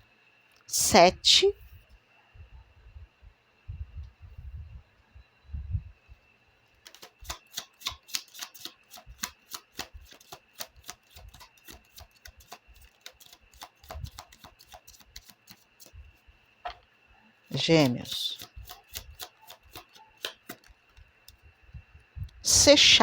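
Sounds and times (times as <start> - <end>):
cards being shuffled: 6.9 - 15.9.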